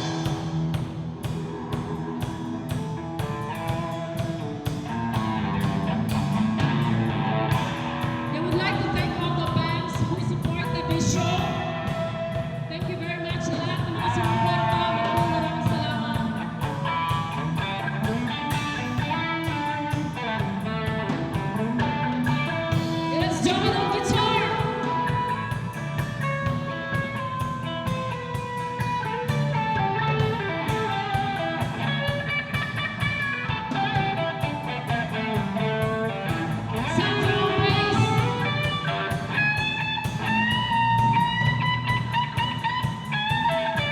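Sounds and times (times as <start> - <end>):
lead vocal singing: 0.0 - 2.4, 8.0 - 19.6, 22.2 - 25.8, 36.7 - 39.4
drums with a steady beat: 0.0 - 43.9
electric guitars: 0.0 - 43.9.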